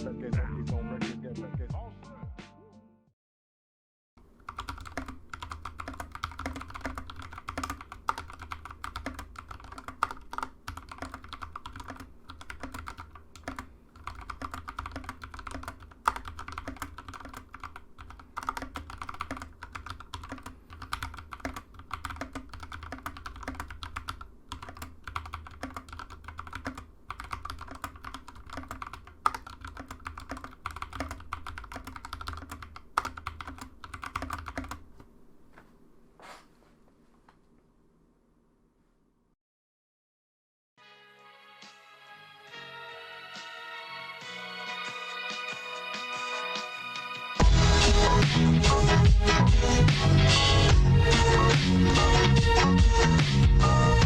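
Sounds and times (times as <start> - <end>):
mechanical keyboard typing: 4.4 - 34.9.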